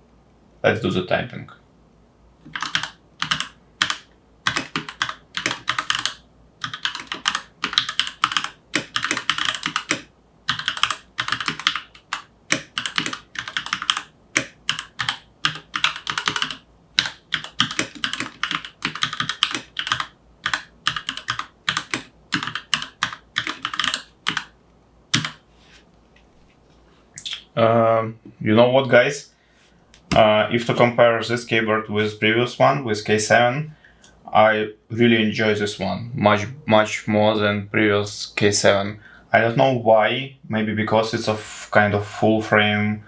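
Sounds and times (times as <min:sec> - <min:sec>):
mechanical keyboard typing: 0:02.5 - 0:24.5, 0:25.1 - 0:25.4.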